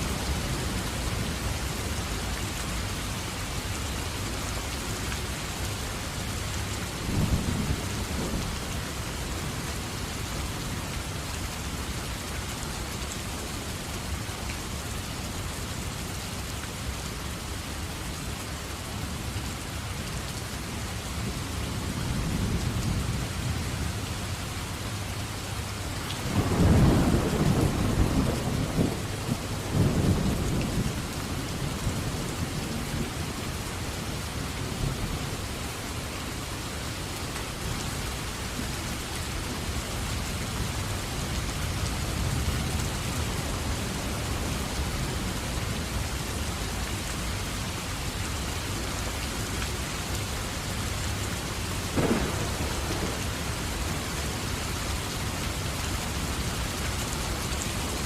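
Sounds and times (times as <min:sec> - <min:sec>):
heavy rain: 0:00.0 - 0:58.0
thunder rumbling: 0:51.9 - 0:54.1.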